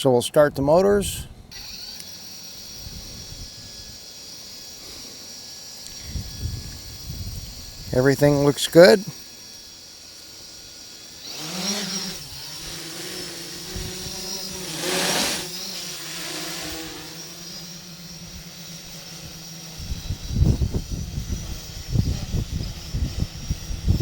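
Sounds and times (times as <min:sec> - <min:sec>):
drone propellers whining: 0:00.8 - 0:24.0
wind buffeting microphone: 0:02.7 - 0:04.0, 0:05.9 - 0:08.6, 0:13.6 - 0:14.7, 0:19.2 - 0:24.0.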